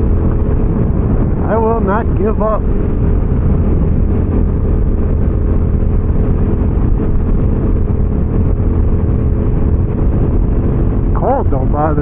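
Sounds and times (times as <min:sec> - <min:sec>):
motorcycle engine cruising: 0:00.0 - 0:12.0
road noise: 0:00.0 - 0:12.0
wind noise: 0:00.0 - 0:12.0.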